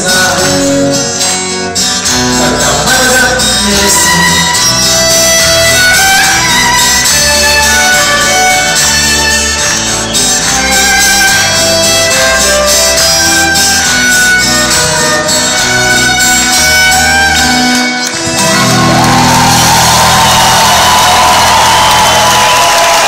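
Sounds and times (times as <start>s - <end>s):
rock band with violin: 0.0s - 23.0s
crowd cheering and applause: 17.9s - 23.0s.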